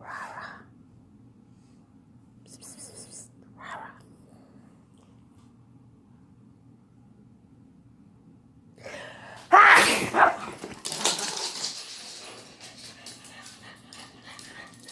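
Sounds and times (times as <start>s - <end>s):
person sneezing: 9.5s - 10.4s.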